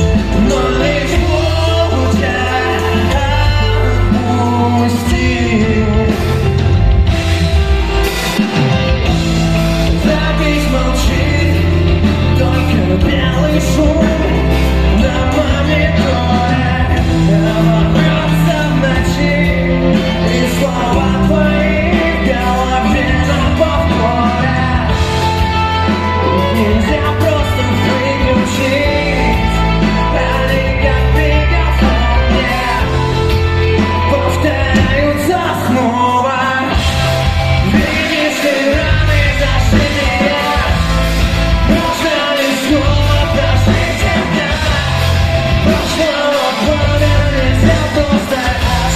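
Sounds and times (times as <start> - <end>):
person singing: 0.0 - 48.9
rock band playing live: 0.0 - 48.9.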